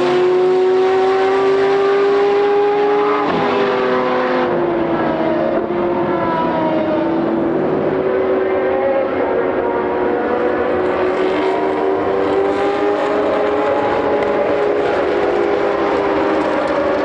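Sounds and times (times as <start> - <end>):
racing car engine running: 9.2 - 17.0.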